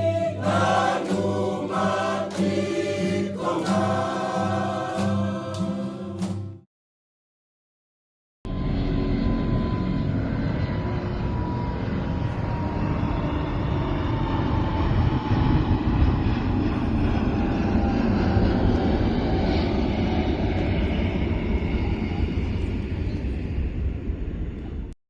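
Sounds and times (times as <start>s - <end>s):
faint whine falling in pitch: 8.5s - 18.7s
loud engine rumble: 8.5s - 24.7s.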